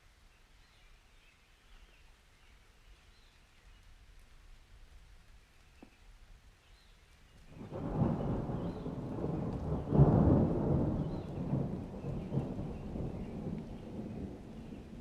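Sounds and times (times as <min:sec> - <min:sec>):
thunder rumbling: 0:07.5 - 0:15.0.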